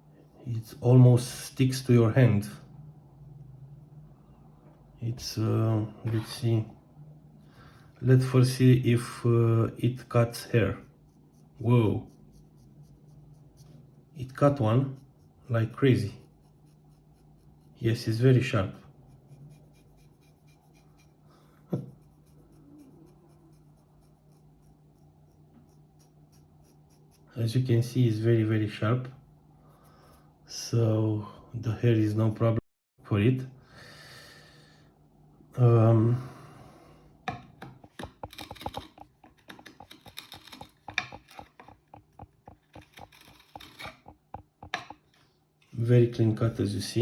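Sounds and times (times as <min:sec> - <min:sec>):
fine scratchy ticks of knife: 0:19.1 - 0:27.3, 0:37.8 - 0:45.0
knife cutting with clicks and scrapes: 0:37.5 - 0:45.2.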